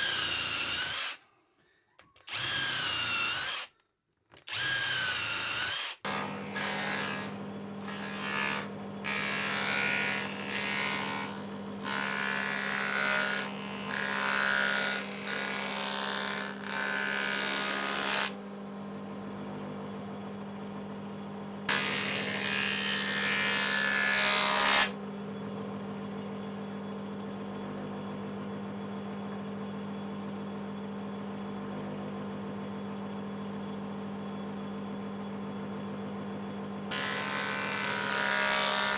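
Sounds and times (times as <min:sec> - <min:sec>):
planer cutting boards: 0:00.0 - 0:01.2, 0:02.3 - 0:03.7, 0:04.4 - 0:20.1, 0:21.7 - 0:25.0, 0:36.9 - 0:38.9
planer humming: 0:06.1 - 0:20.2, 0:21.7 - 0:25.0, 0:36.9 - 0:38.9.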